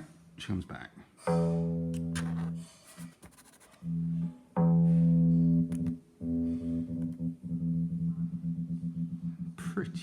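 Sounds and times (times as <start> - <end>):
sustained electric guitar chord: 3.9 - 9.6.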